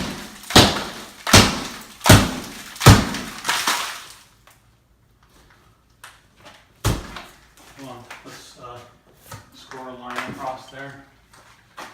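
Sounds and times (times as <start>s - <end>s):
breaking material crunching: 0.0s - 4.3s.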